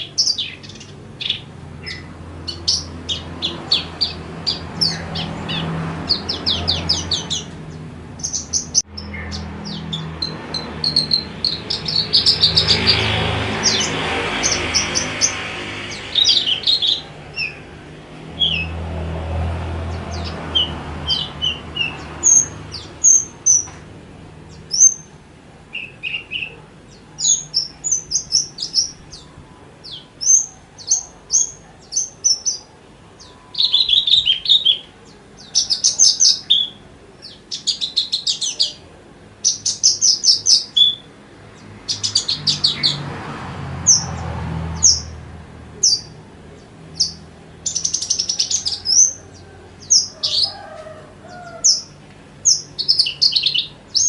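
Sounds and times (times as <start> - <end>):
buzzy bird trills: 0.0 - 18.8
bird song of chirps and whistles: 39.5 - 41.1.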